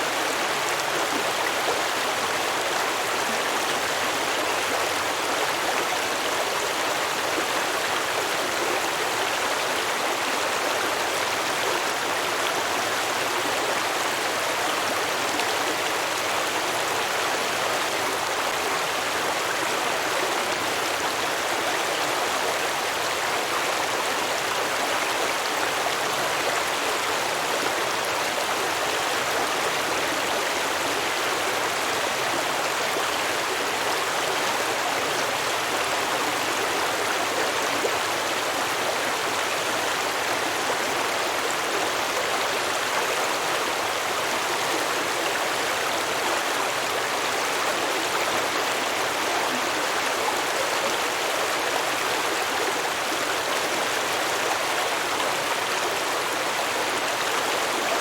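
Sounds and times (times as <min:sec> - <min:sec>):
stream babbling over rocks: 0:00.0 - 0:58.0.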